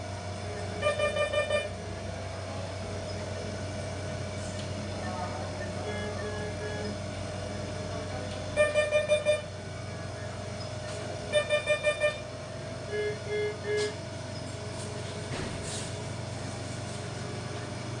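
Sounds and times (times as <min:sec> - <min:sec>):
high medical alarm beeps: 0:00.8 - 0:01.7, 0:08.6 - 0:09.5, 0:11.3 - 0:12.3
lower medical alarm beeps: 0:00.8 - 0:01.8, 0:08.6 - 0:09.5, 0:11.3 - 0:12.3.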